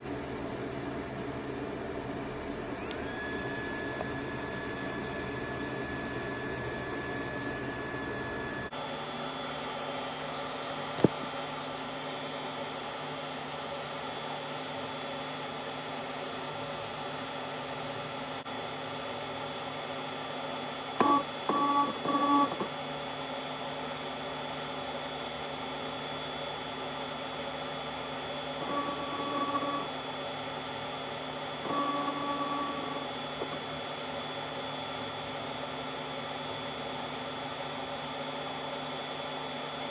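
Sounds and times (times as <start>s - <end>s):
sharp click: 11.0s - 11.2s.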